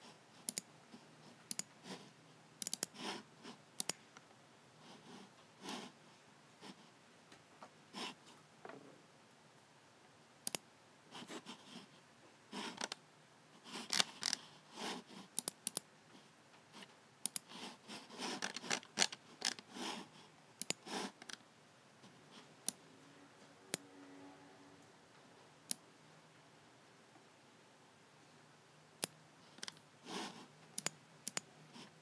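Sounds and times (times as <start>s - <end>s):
mouse buttons clicking: 0.4s - 0.7s, 1.5s - 1.7s, 2.6s - 2.9s, 3.8s - 4.0s, 10.4s - 10.6s, 15.4s - 15.9s, 17.2s - 17.5s, 20.6s - 21.4s, 30.8s - 31.5s
scratchy rustles: 17.8s - 19.7s.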